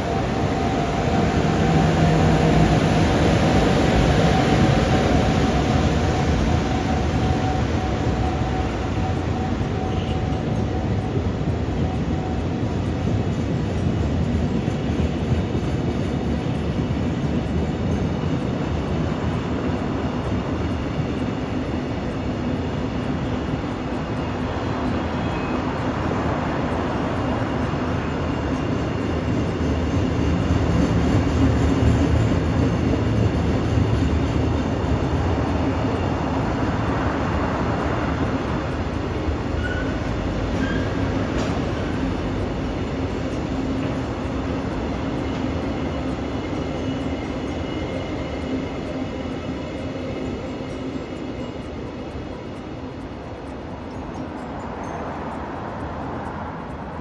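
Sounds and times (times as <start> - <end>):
train wheels rumbling on rails: 0.0 - 57.0.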